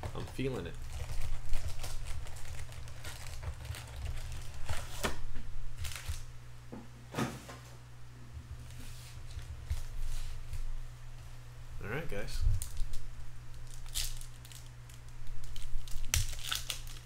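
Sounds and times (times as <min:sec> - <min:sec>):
packaging crinkling and tearing: 0:00.1 - 0:05.2, 0:05.8 - 0:06.3, 0:12.5 - 0:17.0.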